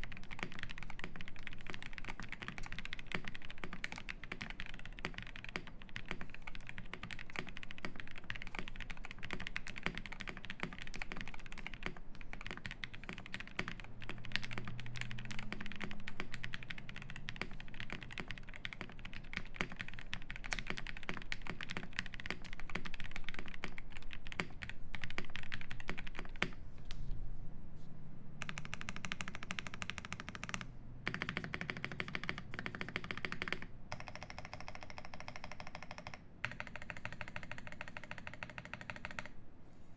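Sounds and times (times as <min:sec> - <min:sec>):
mechanical keyboard typing: 0:00.0 - 0:26.6, 0:28.4 - 0:39.4
fast even keyboard rattle: 0:28.4 - 0:39.3.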